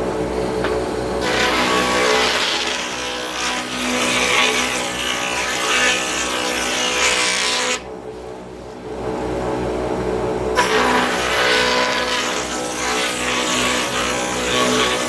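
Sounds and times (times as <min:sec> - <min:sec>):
router hissing cutting wood: 0:01.2 - 0:07.8, 0:10.6 - 0:15.0.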